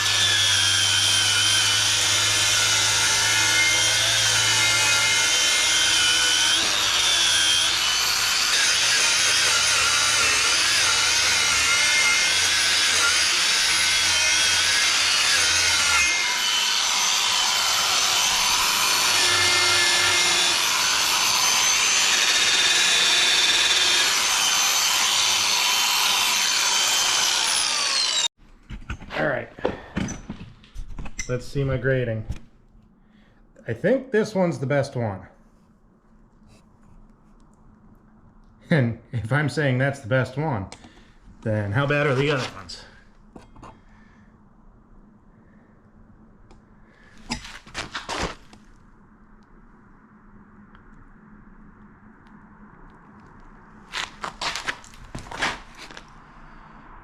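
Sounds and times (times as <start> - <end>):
power tool whining: 0.0 - 28.3.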